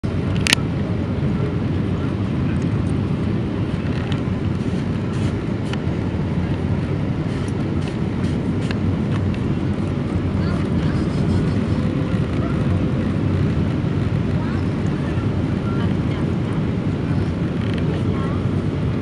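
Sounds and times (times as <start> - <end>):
airliner low rumble: 0.0 - 19.0.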